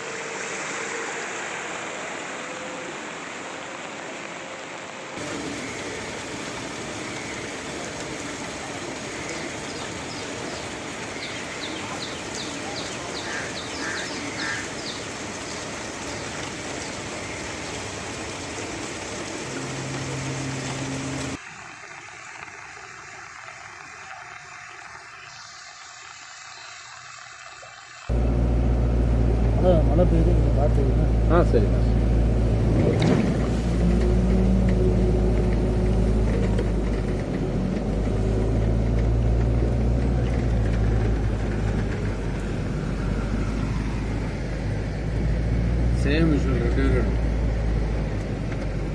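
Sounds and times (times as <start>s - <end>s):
vehicle engine and road rumble: 0.0s - 21.4s, 28.0s - 48.9s
wash of water: 0.0s - 28.1s, 32.5s - 48.9s
heavy rain hissing: 0.0s - 31.0s, 33.4s - 48.9s
birds calling: 5.2s - 21.4s
faint engine hum: 28.1s - 48.9s.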